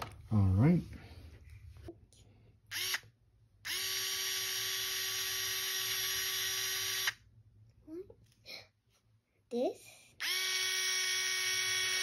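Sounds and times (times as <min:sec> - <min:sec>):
electric screwdriver motor whining: 0:02.7 - 0:03.1, 0:03.7 - 0:07.2, 0:10.2 - 0:12.0.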